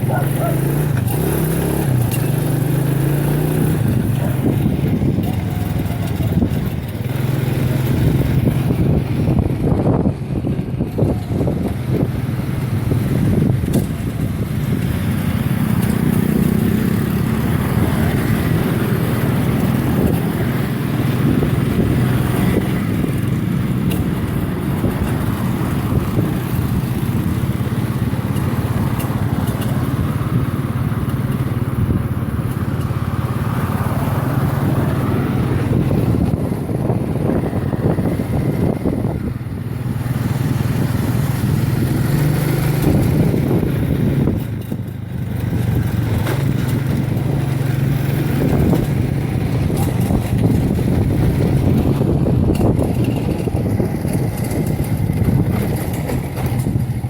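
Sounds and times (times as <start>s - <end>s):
motorcycle engine droning: 0.0s - 57.0s.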